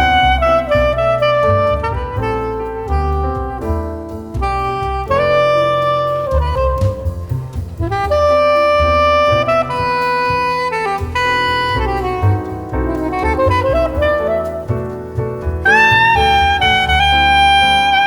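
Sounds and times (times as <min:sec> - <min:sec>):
bass and drums: 0:00.0 - 0:18.0
saxophone playing melody: 0:00.0 - 0:18.0.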